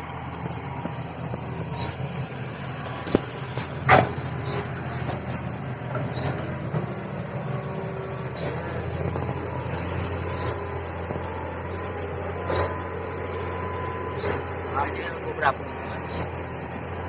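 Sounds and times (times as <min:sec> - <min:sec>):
bird chirping: 0:01.7 - 0:02.1, 0:04.4 - 0:04.8, 0:06.1 - 0:06.5, 0:08.3 - 0:08.7, 0:10.2 - 0:10.7, 0:11.7 - 0:13.3, 0:14.1 - 0:14.6, 0:16.0 - 0:16.4.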